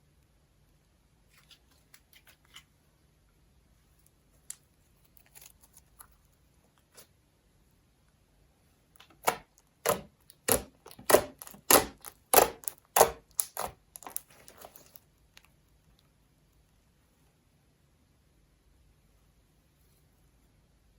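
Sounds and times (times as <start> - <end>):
slime being mixed by hand: 9.0 - 15.0.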